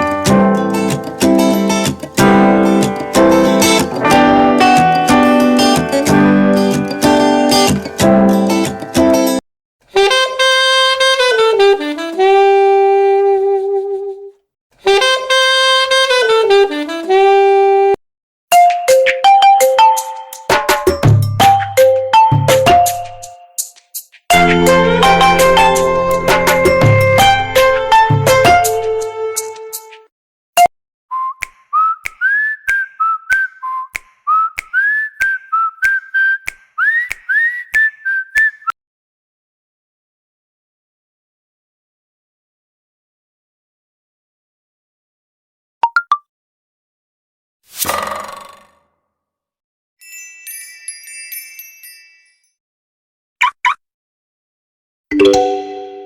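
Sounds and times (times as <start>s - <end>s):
saxophone ringtone melody: 0.8s - 5.8s, 24.3s - 29.5s
plucked ringtone: 55.1s - 56.0s.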